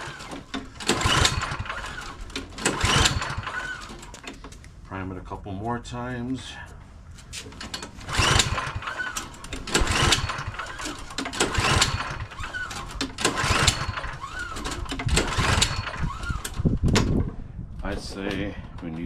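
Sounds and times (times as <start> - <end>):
engine cranking whine: 0.0 - 4.4, 7.7 - 17.3
recoil starter pulls: 0.0 - 4.7, 7.4 - 19.0.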